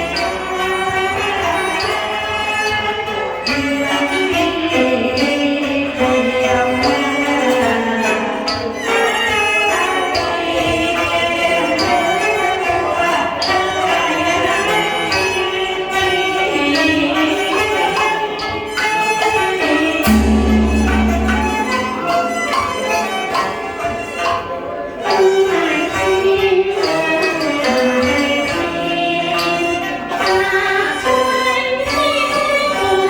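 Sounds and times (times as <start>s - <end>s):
bowed fiddles: 19.6s - 24.8s
sharp percussion strokes: 19.6s - 25.2s.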